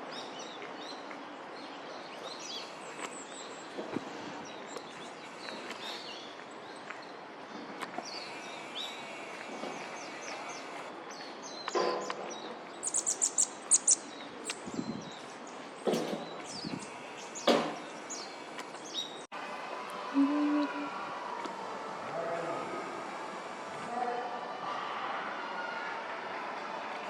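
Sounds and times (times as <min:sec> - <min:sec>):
songbirds chirping: 0:00.0 - 0:19.5.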